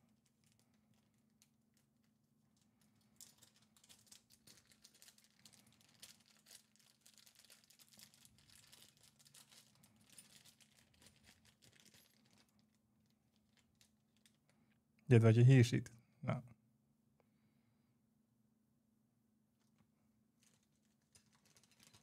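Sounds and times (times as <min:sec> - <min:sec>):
packaging crinkling and clicking: 0:00.1 - 0:14.6, 0:20.4 - 0:22.0.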